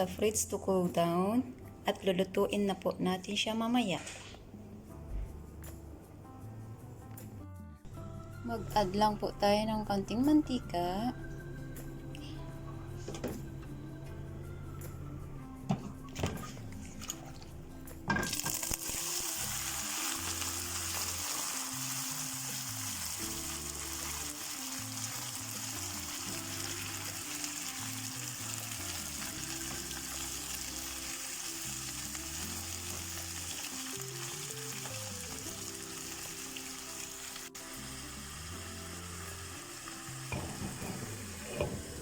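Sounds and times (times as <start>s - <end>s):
chicken sizzling in hot oil: 18.3s - 42.0s.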